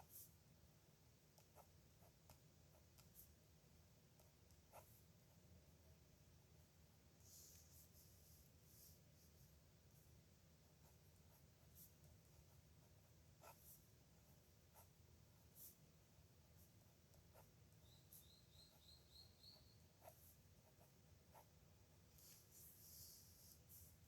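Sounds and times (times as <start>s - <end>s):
pen writing on paper: 13.4s - 13.8s, 19.5s - 21.5s.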